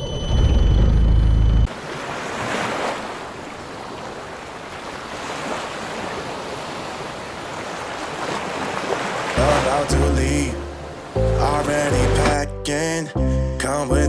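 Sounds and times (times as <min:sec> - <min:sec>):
water rushing and splashing: 0:01.7 - 0:12.5.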